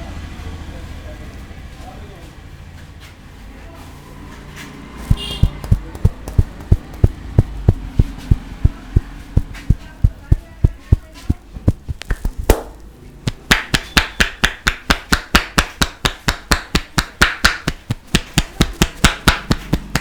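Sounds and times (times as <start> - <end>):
hands striking on body: 5.1 - 20.0.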